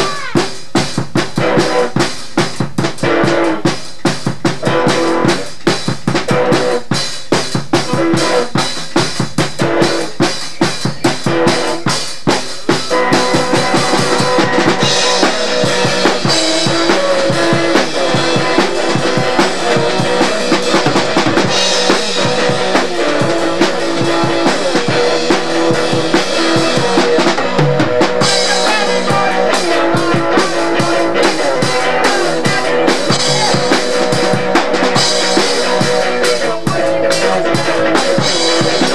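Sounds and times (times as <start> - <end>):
drum kit playing: 0.0 - 38.9
electric guitar notes: 1.4 - 2.1, 4.6 - 5.6, 7.8 - 8.7, 12.7 - 38.9.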